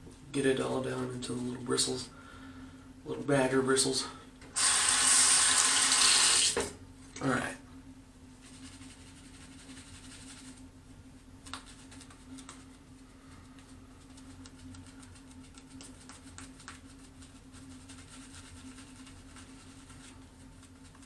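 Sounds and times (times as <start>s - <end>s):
steady low hum: 0.0s - 4.6s, 6.7s - 21.0s
shaving brush swishing lather: 11.5s - 21.0s.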